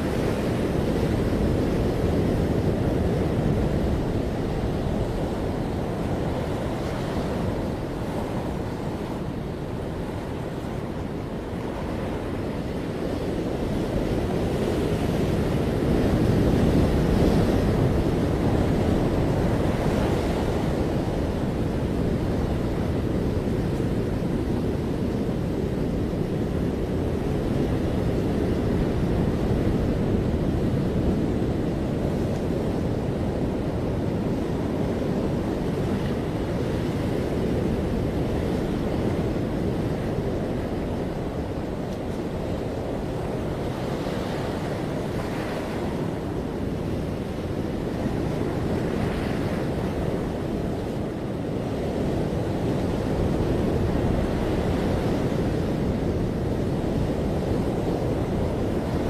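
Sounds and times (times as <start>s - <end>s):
ocean waves on beach: 0.0s - 59.0s
wind buffeting microphone: 0.0s - 59.0s.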